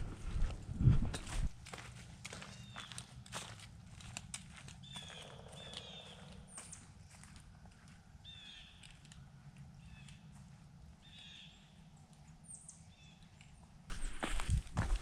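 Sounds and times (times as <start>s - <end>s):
low steady rumble: 0.0s - 1.6s
harsh bird calls: 2.5s - 3.1s, 4.6s - 7.2s.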